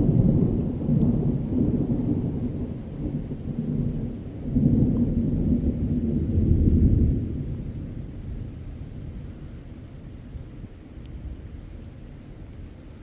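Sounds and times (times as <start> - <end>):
thunder rumbling: 0.0 - 9.2.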